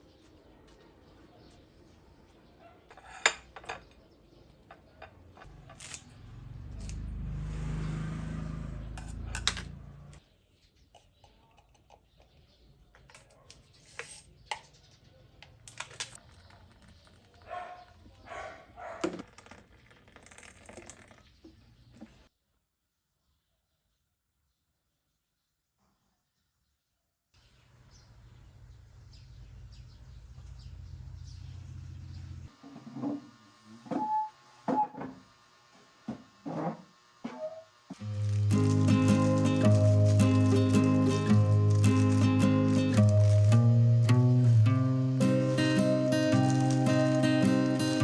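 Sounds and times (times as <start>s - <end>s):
objects clicking and knocking: 9.0s - 9.8s, 10.9s - 14.7s, 15.4s - 18.1s.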